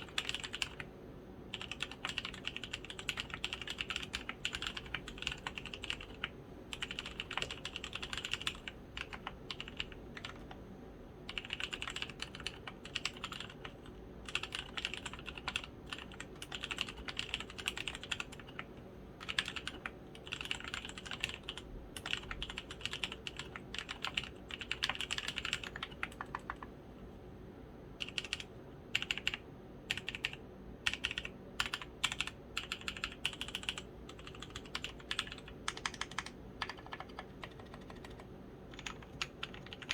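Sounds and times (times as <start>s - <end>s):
mechanical keyboard typing: 0.0s - 0.9s, 1.5s - 10.6s, 11.3s - 26.7s, 28.0s - 39.9s.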